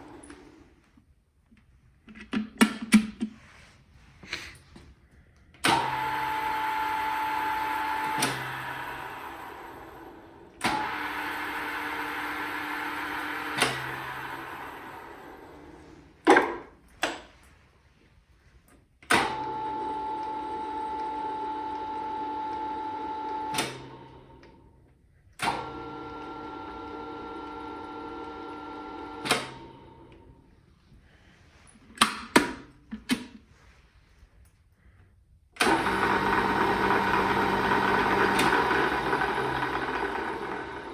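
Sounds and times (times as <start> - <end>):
lathe motor running and winding down: 5.7 - 16.0, 35.6 - 40.9.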